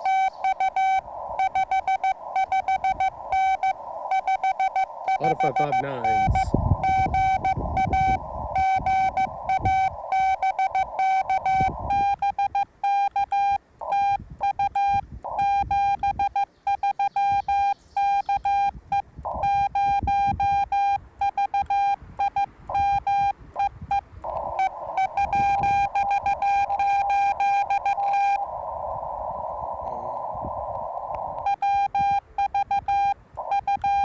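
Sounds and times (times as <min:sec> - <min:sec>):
radio band hiss: 0:00.0 - 0:12.1, 0:24.2 - 0:31.6, 0:33.2 - 0:34.0
morse code tone: 0:00.0 - 0:28.4, 0:31.4 - 0:34.0.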